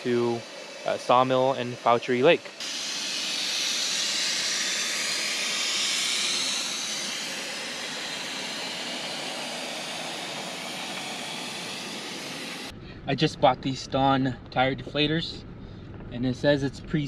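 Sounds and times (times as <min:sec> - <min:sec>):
air hissing from tire: 0:00.0 - 0:12.7.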